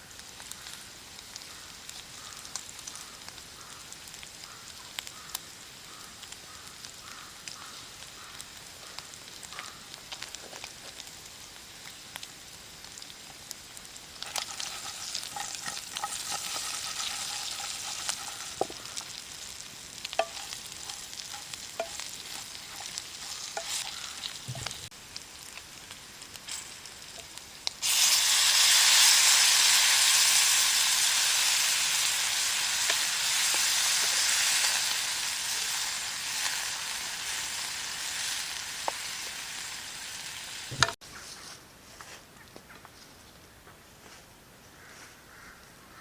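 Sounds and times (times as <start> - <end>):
meat sizzling in hot oil: 0.0 - 41.0.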